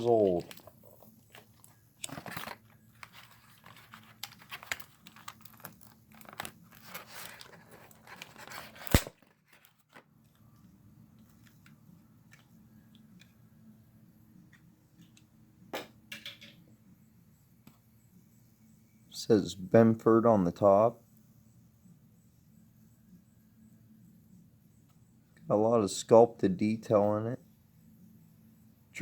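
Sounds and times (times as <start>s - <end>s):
toy packaging tearing and crinkling: 0.3s - 10.0s.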